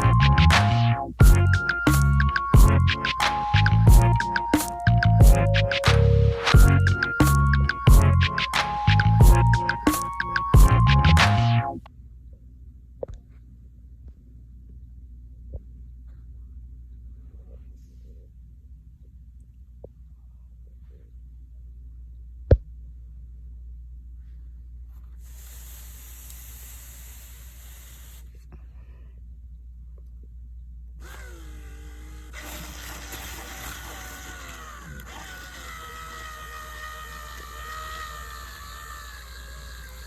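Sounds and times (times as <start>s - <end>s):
low steady hum: 8.9s - 40.0s
small electric gear motor whining: 25.2s - 28.4s, 31.0s - 40.0s
gear noise: 31.0s - 40.0s.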